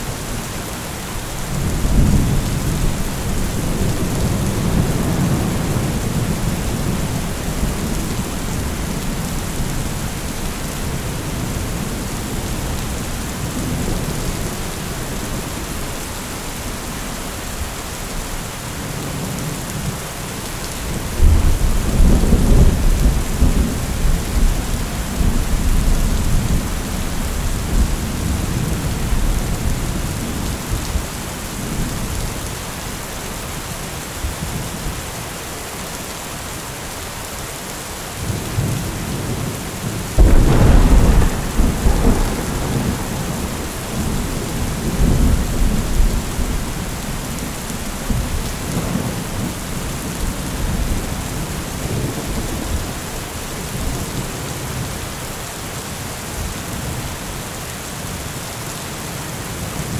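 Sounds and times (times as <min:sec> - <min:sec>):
heavy rain: 0:00.0 - 0:59.9
loud thunderclap: 0:40.2 - 0:46.9
thunder rumbling: 0:40.2 - 0:53.0.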